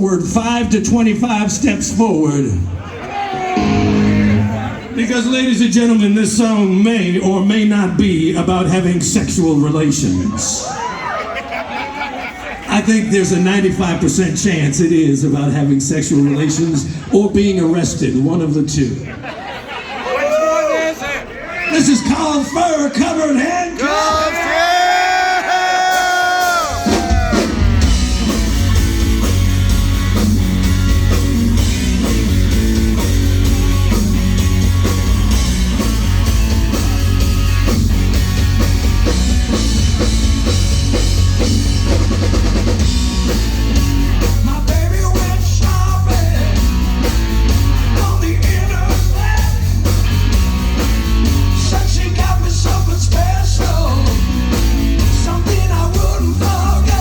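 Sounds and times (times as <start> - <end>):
live rock band playing: 3.4 - 10.6, 25.8 - 57.0
bending guitar note: 3.6 - 4.6.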